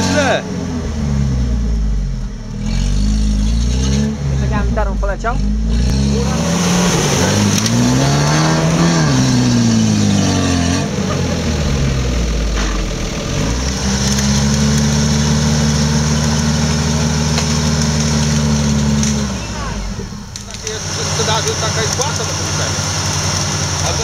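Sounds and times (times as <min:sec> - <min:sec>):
engine revving: 0:00.0 - 0:24.0.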